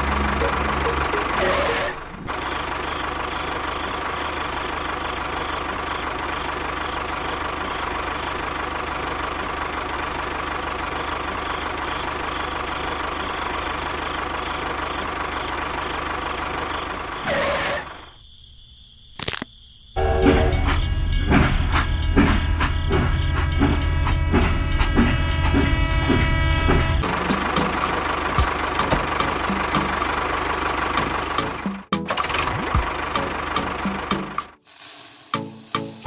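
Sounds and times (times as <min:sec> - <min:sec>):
motor running: 0:26.9 - 0:31.6.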